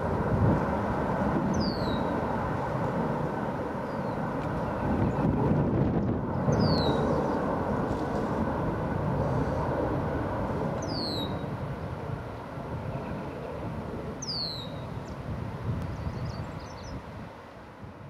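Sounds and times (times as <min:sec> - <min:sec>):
jet engine rumble: 0:00.0 - 0:18.0
bird whistling: 0:01.6 - 0:02.1, 0:06.5 - 0:07.1, 0:10.8 - 0:11.4, 0:14.2 - 0:14.8.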